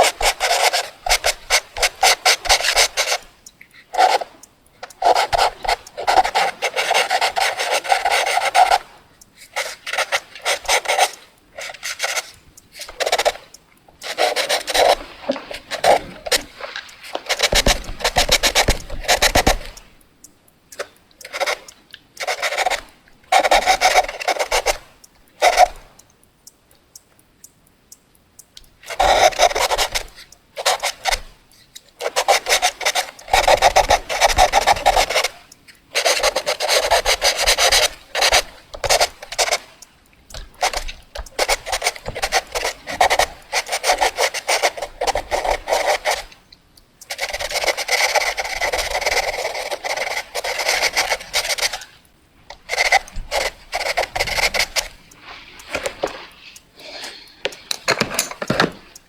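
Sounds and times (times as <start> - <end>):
pencil scratching on paper: 0.0 - 3.3, 4.0 - 4.3, 4.9 - 8.9, 9.5 - 19.8, 21.2 - 25.8, 28.9 - 31.3, 32.0 - 39.7, 40.3 - 46.3, 47.1 - 55.0.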